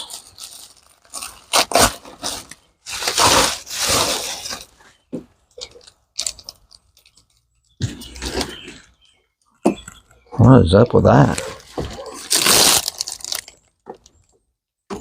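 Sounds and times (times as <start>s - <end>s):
cardboard box tearing: 0.0s - 4.7s, 12.1s - 13.4s
cardboard crinkling and rustling: 0.0s - 5.0s, 11.2s - 14.0s.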